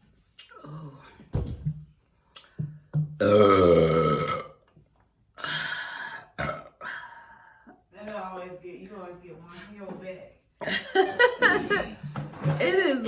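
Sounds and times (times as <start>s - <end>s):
woman burping: 3.2s - 4.6s, 5.4s - 7.8s.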